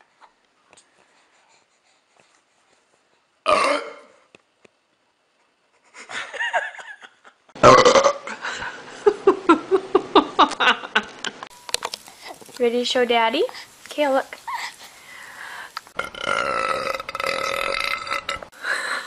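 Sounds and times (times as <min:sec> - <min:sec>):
person burping loudly: 0:03.5 - 0:04.2, 0:07.6 - 0:08.4, 0:16.0 - 0:18.6.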